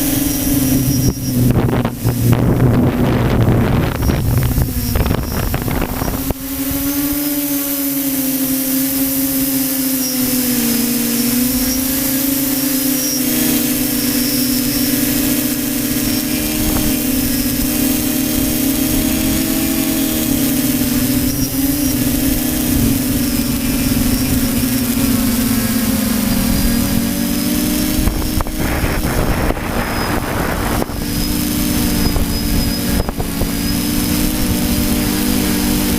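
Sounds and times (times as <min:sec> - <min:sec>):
model aircraft motor drone: 0:00.0 - 0:35.9
wind buffeting microphone: 0:00.0 - 0:35.9.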